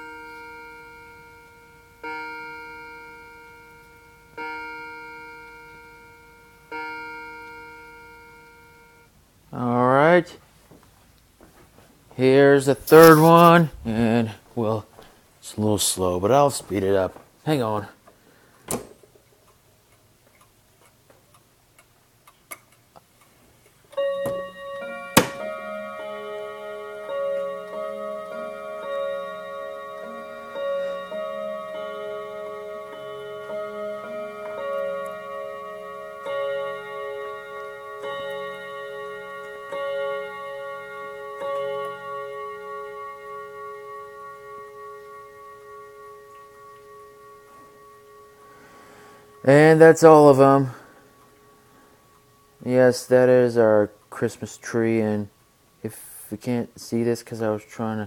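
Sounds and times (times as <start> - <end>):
clock chime striking: 0.0 - 9.1, 12.6 - 14.2, 24.0 - 54.3.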